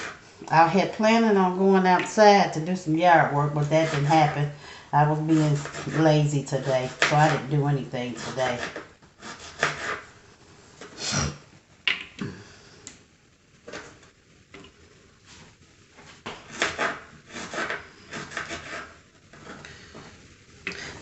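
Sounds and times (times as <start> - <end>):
knife chopping on cutting board: 16.3 - 18.9.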